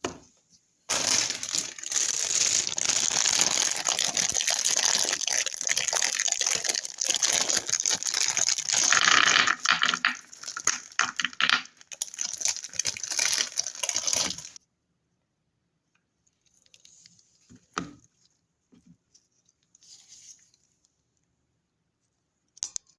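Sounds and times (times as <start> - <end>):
wrapper crinkling and tearing: 0.9 - 14.6.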